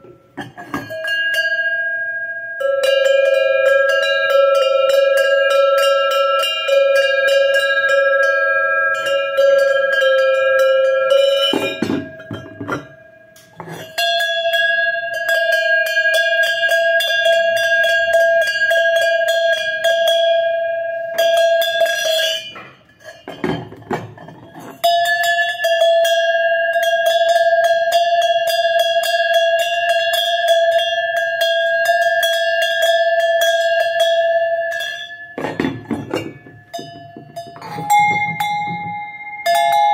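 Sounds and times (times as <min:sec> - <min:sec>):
metal bells ringing: 0:00.0 - 0:39.9
handling knocks: 0:35.4 - 0:39.1.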